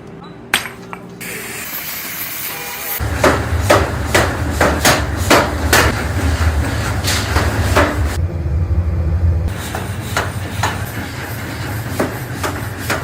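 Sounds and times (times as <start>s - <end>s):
hammer blows: 3.0s - 8.2s, 9.5s - 13.0s
steady low rumble: 3.0s - 9.7s.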